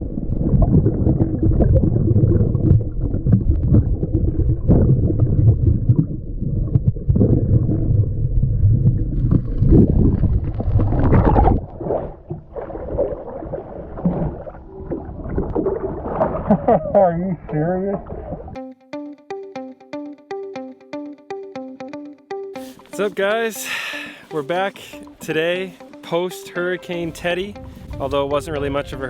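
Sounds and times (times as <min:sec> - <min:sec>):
water sloshing and gurgling: 0:00.0 - 0:18.6.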